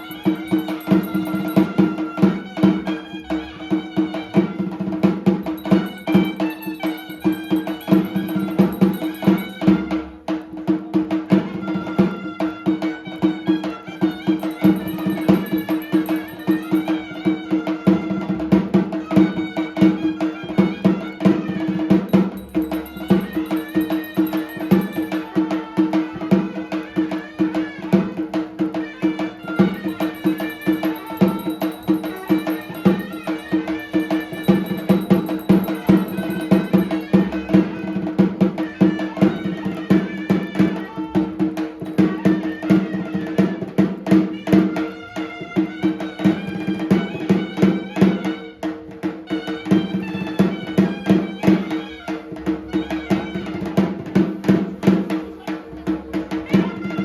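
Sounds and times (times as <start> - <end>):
melody line: 0.0 - 1.9, 5.6 - 9.6, 14.0 - 17.1, 22.1 - 25.3, 29.6 - 37.2
fast percussion: 0.0 - 57.0.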